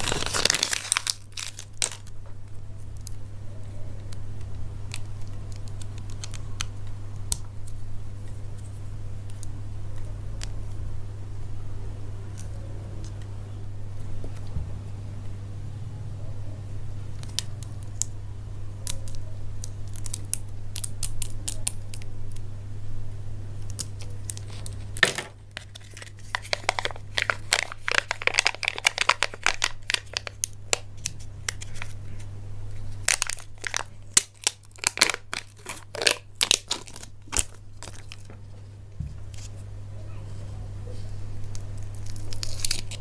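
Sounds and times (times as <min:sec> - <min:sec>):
wrapper tearing and crumpling: 0:00.0 - 0:02.2, 0:18.9 - 0:22.0, 0:23.7 - 0:32.0, 0:33.0 - 0:38.3, 0:41.5 - 0:43.0
low steady hum: 0:00.0 - 0:43.0.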